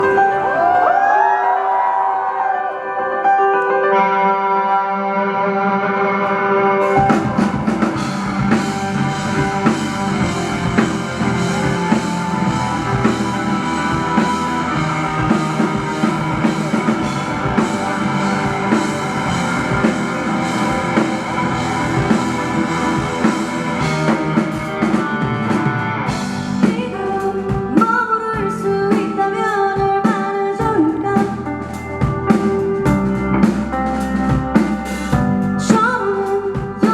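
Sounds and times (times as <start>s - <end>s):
rock band playing: 0.0s - 36.9s
drum hits: 6.8s - 26.8s.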